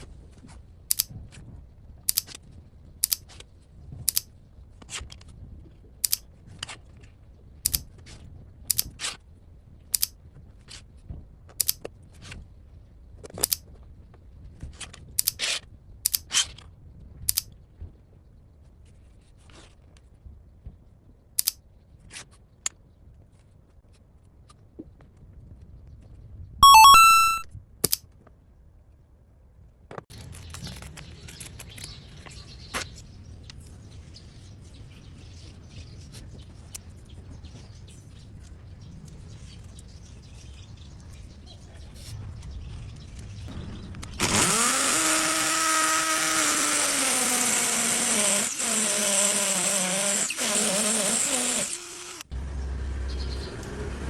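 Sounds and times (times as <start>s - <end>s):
mechanical clicks and snaps: 0.9s - 1.1s, 2.1s - 2.4s, 3.0s - 3.3s, 4.1s - 4.3s, 6.0s - 6.2s, 7.7s - 7.9s, 8.7s - 8.9s, 10.0s - 10.2s, 11.6s - 11.9s, 13.4s - 13.6s, 15.2s - 15.4s, 16.1s - 16.3s, 17.3s - 17.5s, 21.4s - 21.6s, 27.8s - 28.0s
short rasp: 44.2s - 52.2s.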